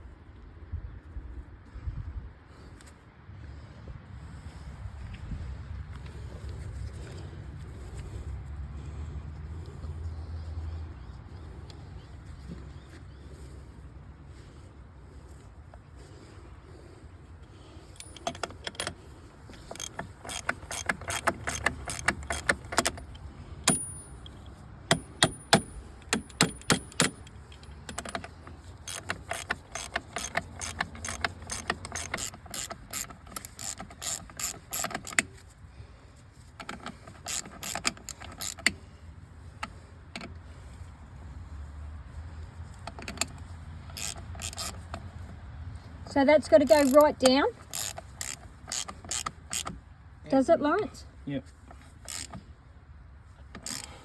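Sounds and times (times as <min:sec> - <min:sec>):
ratchet spanner clicking: 0:18.0 - 0:35.4, 0:36.6 - 0:38.8, 0:42.8 - 0:45.3, 0:46.4 - 0:49.8, 0:51.7 - 0:52.5, 0:53.5 - 0:54.0.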